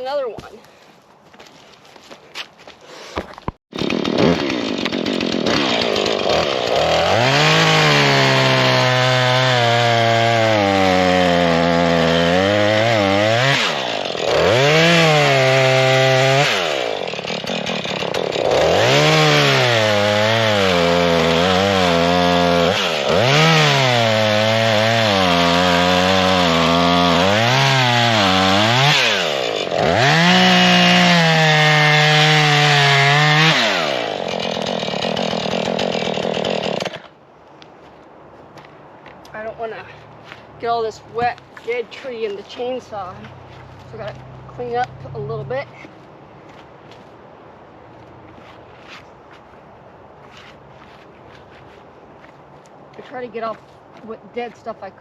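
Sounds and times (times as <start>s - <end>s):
chainsaw cutting into stump: 3.1s - 37.1s.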